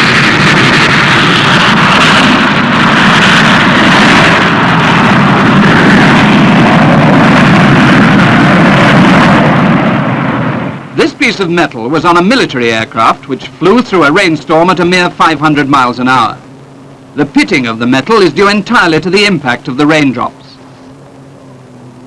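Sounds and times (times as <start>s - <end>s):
machinery rushing roar: 0.0s - 22.0s.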